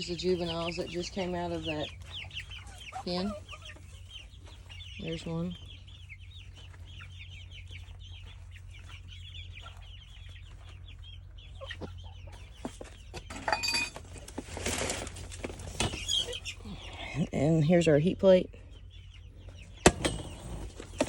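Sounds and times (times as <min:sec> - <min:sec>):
chicks peeping: 0:00.0 - 0:21.0
rustling and clatter: 0:12.3 - 0:16.5, 0:19.8 - 0:21.0.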